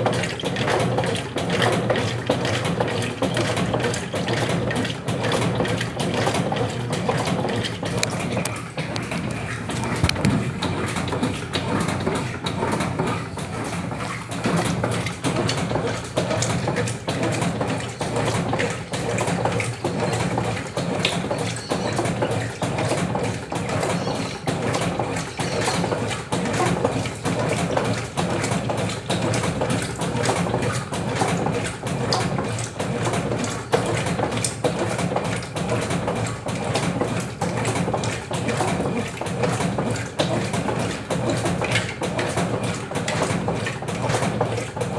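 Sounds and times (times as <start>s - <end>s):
motor hum: 0.0s - 44.9s
washing machine agitator churning: 0.0s - 44.9s.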